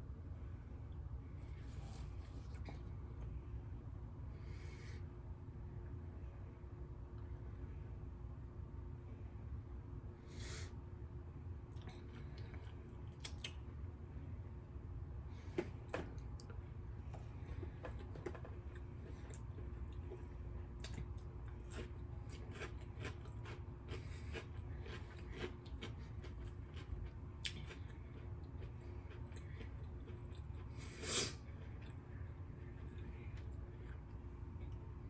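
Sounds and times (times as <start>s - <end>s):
steady low hum: 0.0s - 35.0s
person chewing food: 11.7s - 13.6s, 15.6s - 35.0s.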